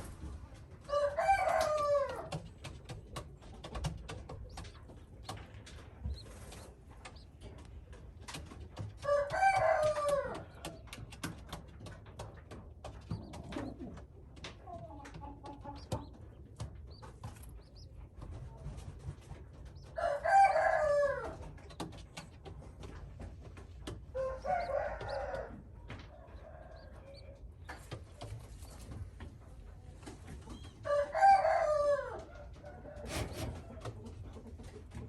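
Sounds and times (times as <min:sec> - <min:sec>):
rooster crowing: 0:00.9 - 0:02.3, 0:09.0 - 0:10.7, 0:20.0 - 0:21.4, 0:24.1 - 0:27.2, 0:30.8 - 0:33.8.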